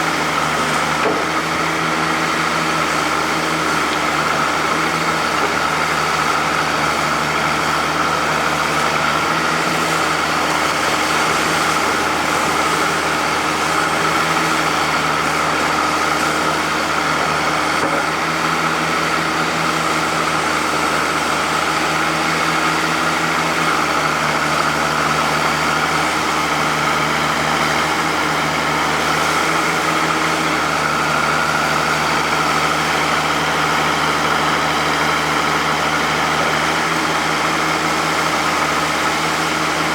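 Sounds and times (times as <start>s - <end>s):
backhoe engine running: 0.0s - 39.9s.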